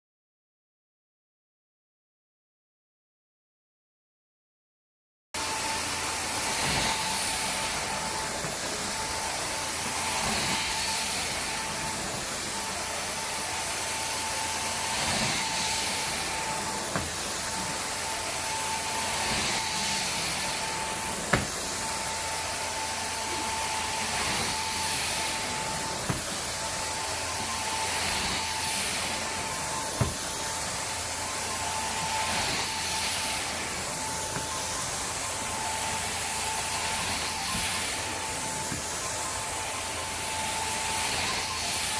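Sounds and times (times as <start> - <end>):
carpet cleaning machine whine: 5.4 - 41.9.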